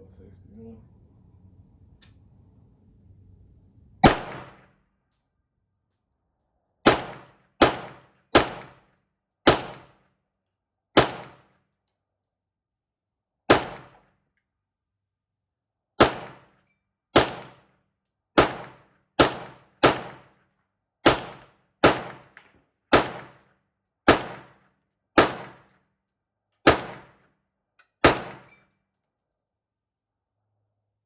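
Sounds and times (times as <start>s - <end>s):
gunshots with ringing tail: 4.0s - 4.7s, 6.8s - 8.9s, 9.5s - 10.0s, 11.0s - 11.5s, 13.5s - 14.0s, 16.0s - 16.5s, 17.2s - 17.6s, 18.4s - 20.3s, 21.0s - 23.4s, 24.1s - 24.6s, 25.2s - 25.7s, 26.7s - 27.2s, 28.0s - 28.6s.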